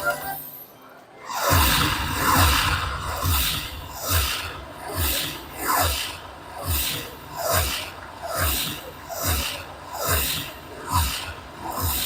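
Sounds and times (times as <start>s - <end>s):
slot machine electronic bonus sounds: 0.0s - 0.8s
whooshing pulse with low thud: 1.5s - 5.3s.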